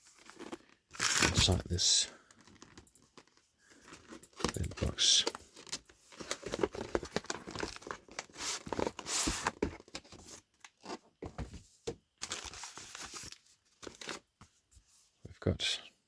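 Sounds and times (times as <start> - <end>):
packaging rustling and crinkling: 0.0 - 11.6, 12.2 - 14.4
packaging tearing: 0.2 - 1.6.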